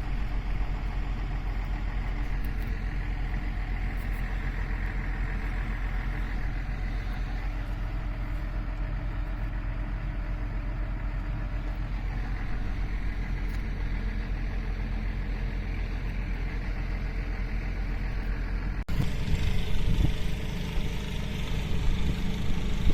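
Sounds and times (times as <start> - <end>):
low engine-like rumble: 0.0 - 22.9.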